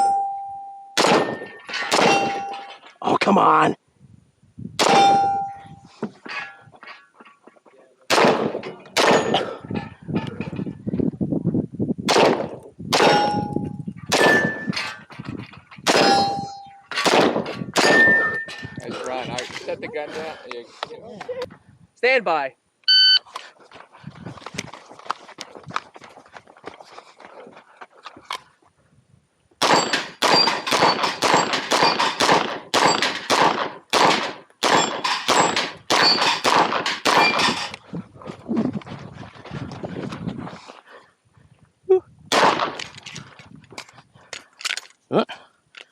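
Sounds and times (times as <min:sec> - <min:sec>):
steel plate ringing: 0:00.0 - 0:02.8, 0:04.8 - 0:05.8, 0:13.0 - 0:15.0, 0:15.9 - 0:17.0, 0:17.8 - 0:18.8
gunshots: 0:01.0 - 0:02.6, 0:04.8 - 0:05.3, 0:08.1 - 0:09.6, 0:12.1 - 0:13.5, 0:14.1 - 0:14.7, 0:15.9 - 0:18.3, 0:29.6 - 0:37.7, 0:42.3 - 0:42.8.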